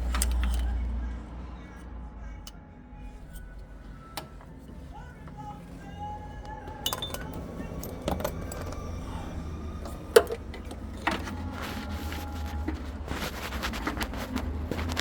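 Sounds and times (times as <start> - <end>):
steady low hum: 0.0 - 15.0
metallic knocks of hand tools: 6.4 - 9.0.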